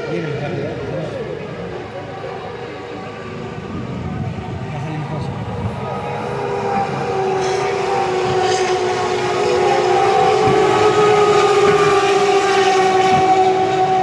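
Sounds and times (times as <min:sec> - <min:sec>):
race car engine passing by: 0:03.2 - 0:14.0.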